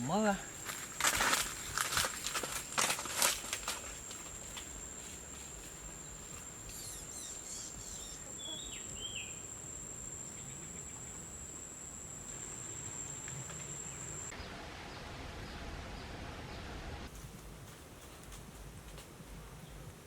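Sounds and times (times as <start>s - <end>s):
high-pitched insect trill: 0.0s - 14.3s
rustling: 0.5s - 6.9s.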